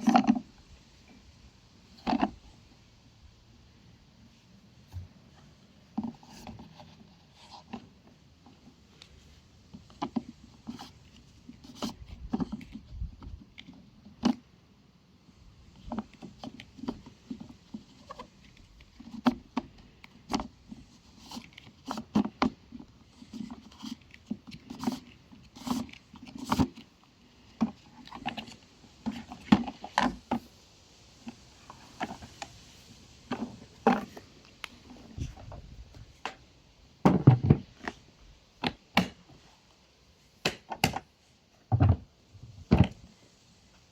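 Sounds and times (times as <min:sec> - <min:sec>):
plastic clicks knocks and thuds: 0:37.0 - 0:38.0, 0:38.6 - 0:39.2, 0:40.4 - 0:41.1, 0:41.7 - 0:42.0, 0:42.7 - 0:43.0.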